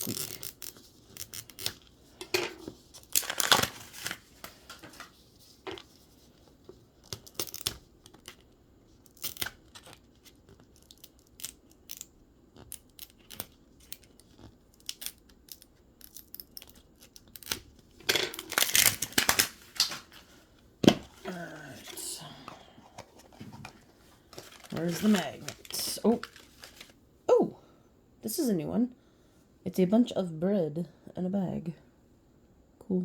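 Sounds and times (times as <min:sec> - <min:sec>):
plastic wrapping tearing and crinkling: 0:00.0 - 0:01.8, 0:03.0 - 0:05.1, 0:18.3 - 0:20.2, 0:24.3 - 0:27.0.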